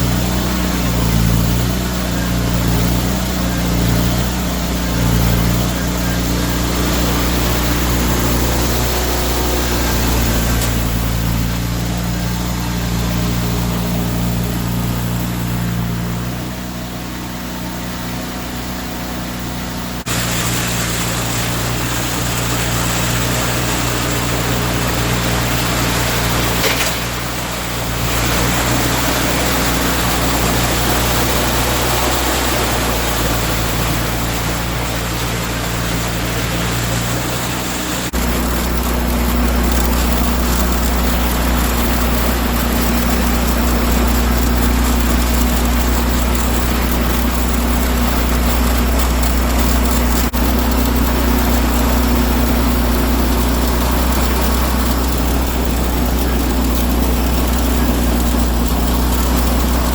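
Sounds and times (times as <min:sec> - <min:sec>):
tractor engine running: 0:00.0 - 0:59.9.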